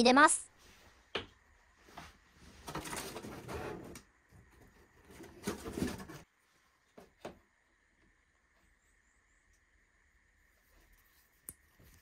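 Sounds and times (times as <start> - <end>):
plastic bottle handling and scraping: 2.4 - 6.3.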